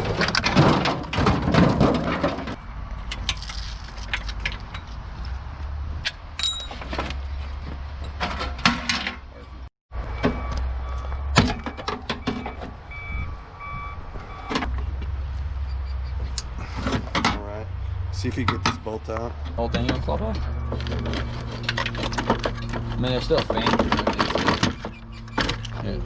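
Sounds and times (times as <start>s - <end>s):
metal tools clinking and knocking: 6.1s - 7.2s.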